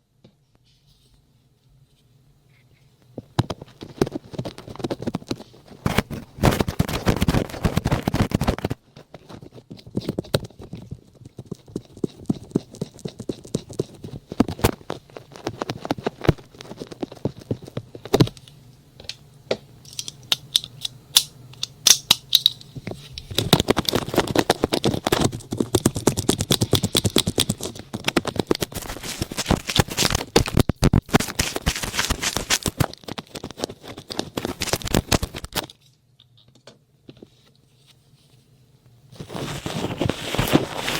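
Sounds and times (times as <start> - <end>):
scratching and clicking on microphone: 3.4 - 18.4, 23.2 - 35.7
rubbing on microphone: 23.6 - 30.3, 39.1 - 40.9.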